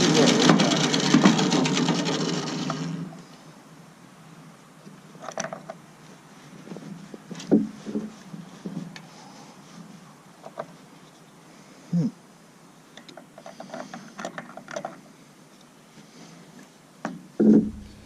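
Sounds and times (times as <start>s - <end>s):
loud mechanical noise: 0.0s - 3.3s, 17.4s - 18.0s.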